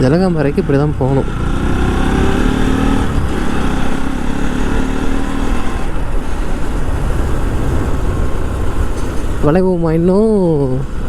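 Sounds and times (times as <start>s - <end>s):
motorcycle engine running: 0.0s - 10.2s
wind rush on microphone: 1.4s - 10.0s.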